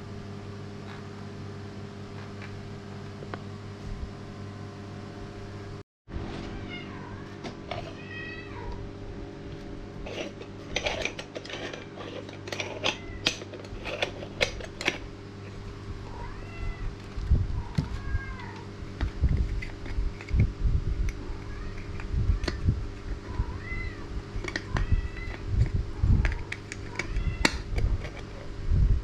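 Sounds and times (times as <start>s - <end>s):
steady low hum: 0.0s - 29.0s
cat meowing: 6.5s - 8.8s, 16.1s - 17.0s, 17.6s - 18.7s, 21.3s - 22.6s, 23.3s - 24.0s, 24.7s - 25.4s, 26.4s - 27.6s.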